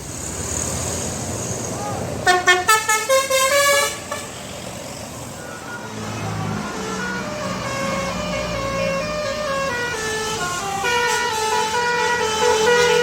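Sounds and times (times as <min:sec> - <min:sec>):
bus engine rumble: 0:00.0 - 0:13.0
musical air horn: 0:02.3 - 0:04.3.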